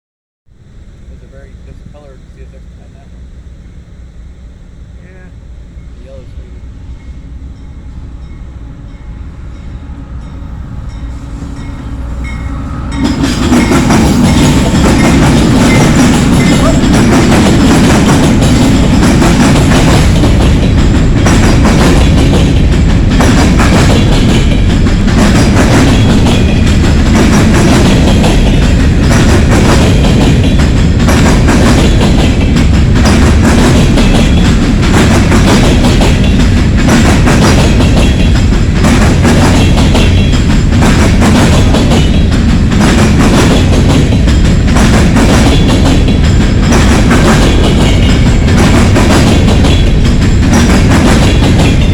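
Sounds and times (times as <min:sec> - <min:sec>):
freight train rumble: 0:00.5 - 0:51.9
wheels clattering over rail joints: 0:12.2 - 0:51.9.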